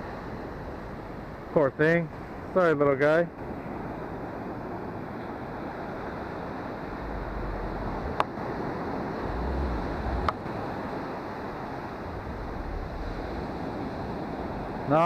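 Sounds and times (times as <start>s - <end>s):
ocean surf washing onto beach: 0.0s - 15.0s
wind buffeting microphone: 3.7s - 15.0s.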